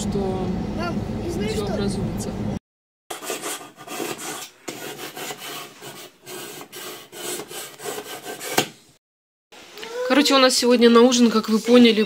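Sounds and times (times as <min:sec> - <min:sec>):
rasping scraping strokes: 0:03.1 - 0:08.6.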